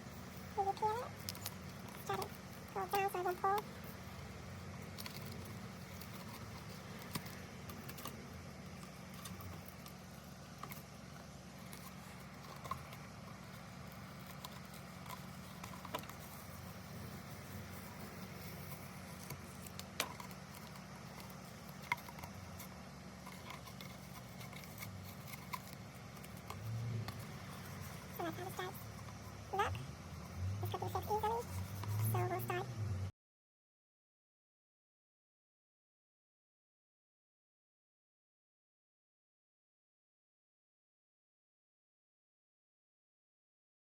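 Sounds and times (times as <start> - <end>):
steady low hum: 0.0 - 33.1.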